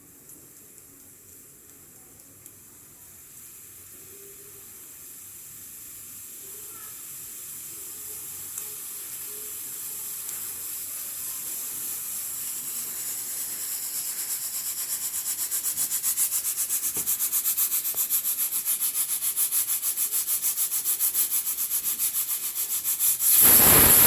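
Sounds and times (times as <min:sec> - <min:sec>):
pressure cooker steam hiss: 0:02.6 - 0:24.0
pressure cooker whistle pulsing: 0:23.3 - 0:24.0.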